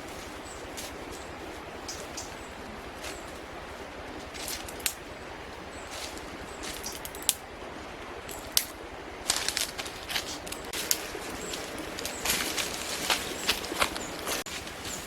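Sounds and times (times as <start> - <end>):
steady outdoor hiss: 0.0 - 15.0.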